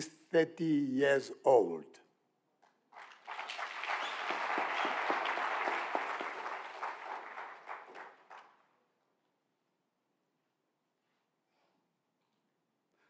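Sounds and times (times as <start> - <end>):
audience applauding: 2.9 - 8.7.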